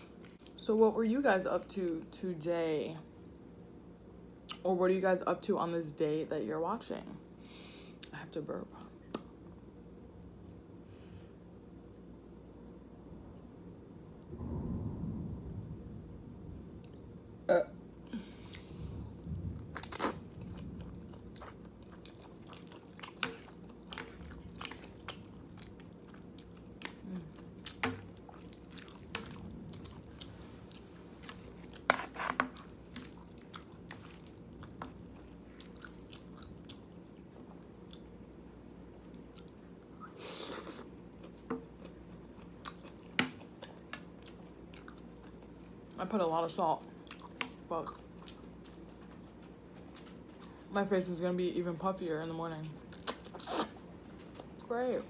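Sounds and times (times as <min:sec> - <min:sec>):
wet chewing of noodles: 0:18.5 - 0:46.0, 0:47.0 - 0:50.7, 0:52.9 - 0:54.7.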